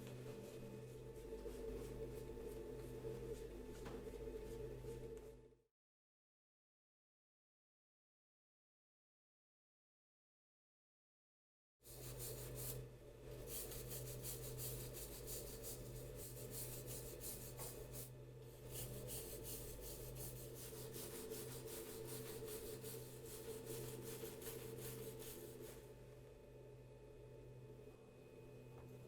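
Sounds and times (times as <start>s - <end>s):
faint hum: 0.0s - 5.6s, 11.9s - 29.0s
rubbing strokes on filter: 11.9s - 12.8s, 13.4s - 25.8s.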